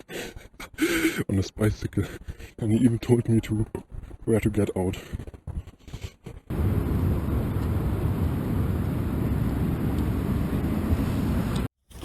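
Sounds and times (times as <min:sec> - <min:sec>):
low rumbling noise: 0:06.5 - 0:11.7.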